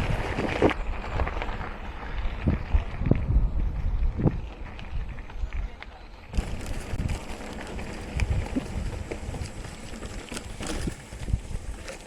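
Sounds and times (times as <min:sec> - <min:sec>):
wind buffeting microphone: 0:00.0 - 0:12.0
bike clicks and rattles: 0:06.3 - 0:12.0.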